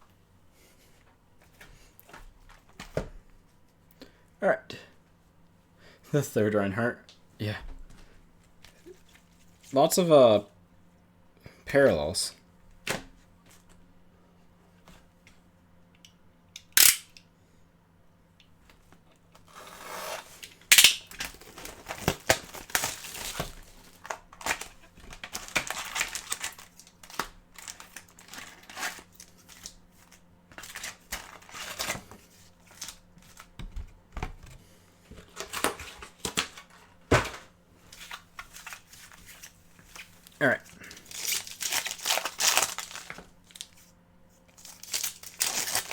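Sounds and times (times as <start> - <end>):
wrappers tearing and crinkling: 19.5 - 33.5, 37.9 - 43.9, 44.5 - 45.9.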